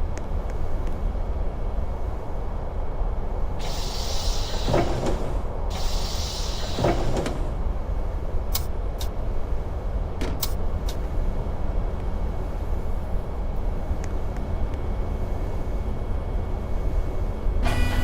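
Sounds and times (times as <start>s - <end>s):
pneumatic door air hiss: 3.6s - 7.6s
bus engine idling: 3.6s - 18.0s
sharp clicks: 8.5s - 9.1s.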